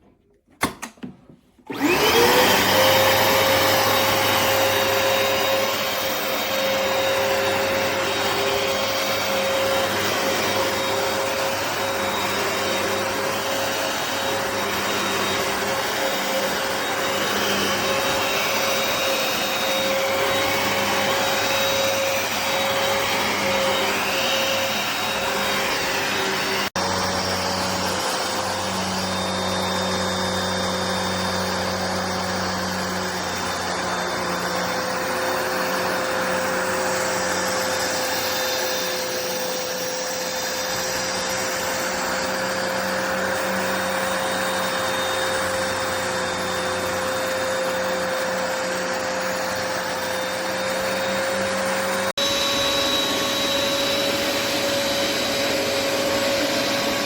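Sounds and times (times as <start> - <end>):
carpet cleaner motor whine: 0.6 - 57.0.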